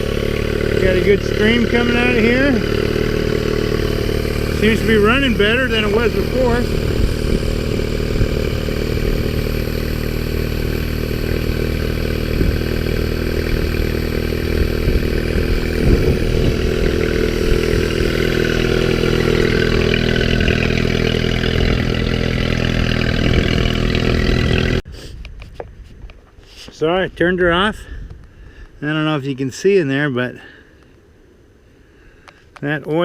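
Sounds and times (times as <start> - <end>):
outboard motor running: 0.0 - 24.8.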